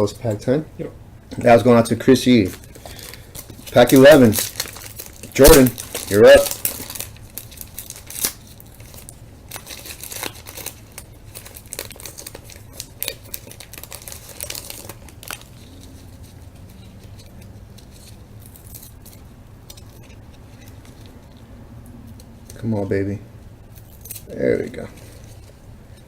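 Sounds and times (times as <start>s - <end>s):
wrapper crinkling and tearing: 2.3s - 21.4s.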